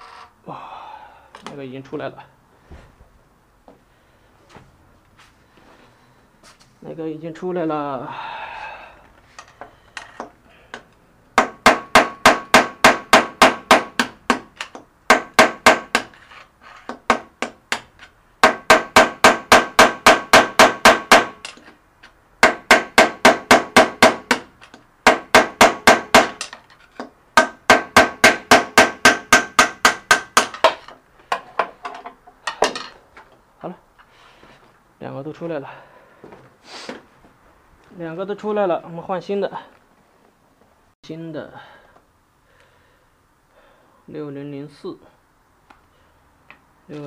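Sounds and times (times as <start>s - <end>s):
hammer striking metal: 27.4s - 31.4s.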